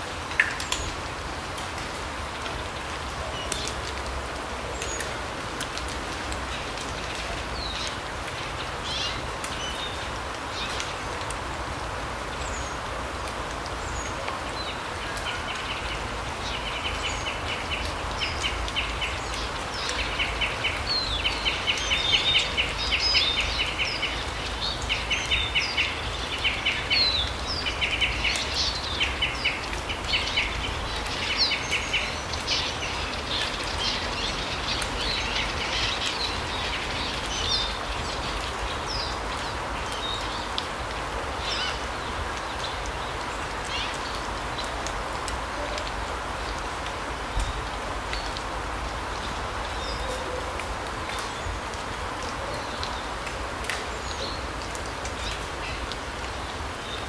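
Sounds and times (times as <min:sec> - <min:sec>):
songbirds trilling and chirping: 0:13.8 - 0:44.8.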